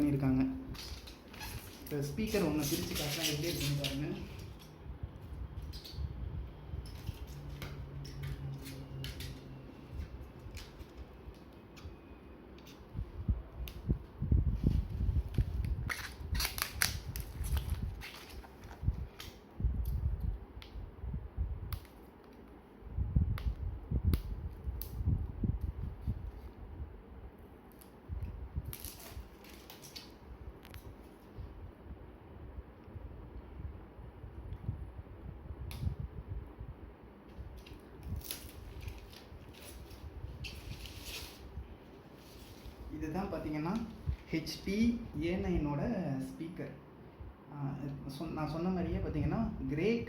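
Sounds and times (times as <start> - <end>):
packaging rustling and scraping: 0.8 - 4.6, 15.4 - 19.2, 37.6 - 42.9.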